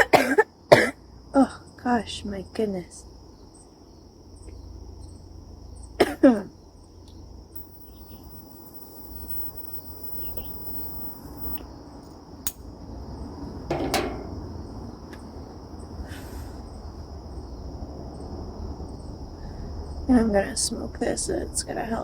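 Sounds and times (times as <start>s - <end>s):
person coughing: 0.0s - 1.0s, 6.0s - 6.4s
steady high-pitched tone: 7.6s - 11.6s.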